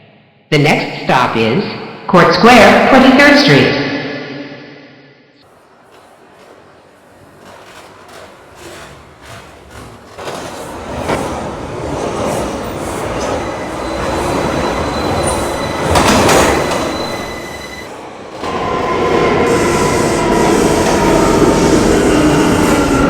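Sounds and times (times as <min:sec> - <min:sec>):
subway wheels rumbling on rail: 0:05.4 - 0:23.0
wheels squealing: 0:05.4 - 0:23.0.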